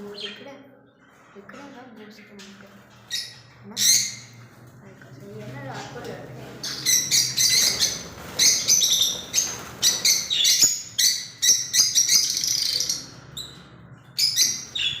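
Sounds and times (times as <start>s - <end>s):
lovebirds chirping: 5.6s - 15.0s.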